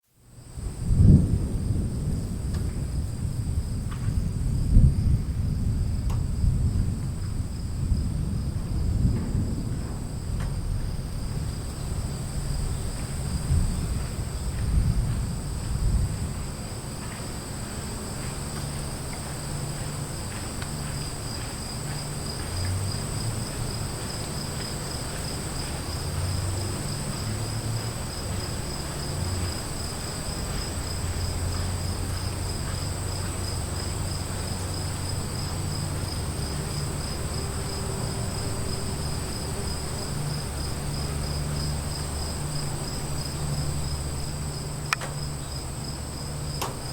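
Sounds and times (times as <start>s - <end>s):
insects chirping: 0.2s - 46.9s
distant storm rumble: 0.5s - 46.9s.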